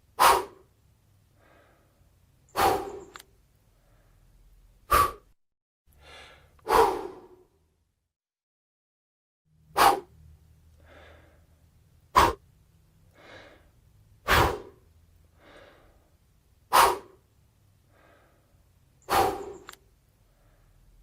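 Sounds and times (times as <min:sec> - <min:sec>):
person blowing sharp puffs: 0:00.2 - 0:00.7, 0:02.6 - 0:03.3, 0:04.9 - 0:05.4, 0:06.0 - 0:07.4, 0:09.8 - 0:10.1, 0:12.1 - 0:12.4, 0:14.2 - 0:14.8, 0:16.7 - 0:17.2, 0:19.0 - 0:19.8
soft breaths drawn in: 0:01.3 - 0:07.5, 0:10.7 - 0:12.5, 0:13.1 - 0:21.0.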